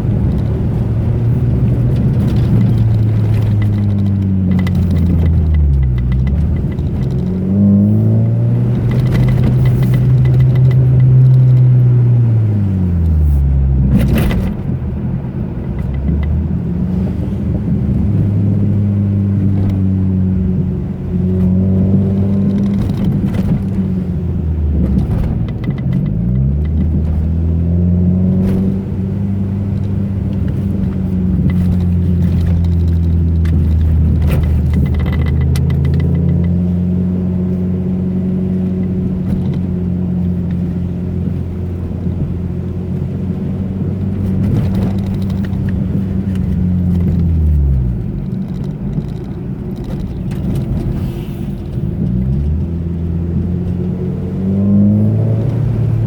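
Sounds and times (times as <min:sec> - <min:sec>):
bumps and rattles: 0:00.0 - 0:56.0
car engine running: 0:00.0 - 0:56.0.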